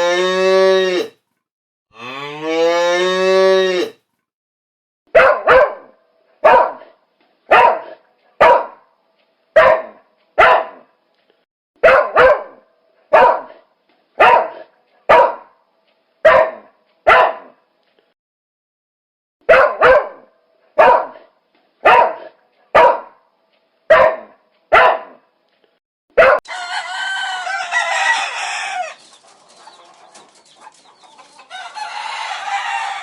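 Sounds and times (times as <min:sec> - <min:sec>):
cow mooing: 0:00.0 - 0:01.2, 0:01.9 - 0:04.0
dog barking: 0:05.1 - 0:08.9, 0:09.6 - 0:10.9, 0:11.8 - 0:15.6, 0:16.2 - 0:17.6, 0:19.4 - 0:23.2, 0:23.9 - 0:25.3, 0:26.1 - 0:26.5.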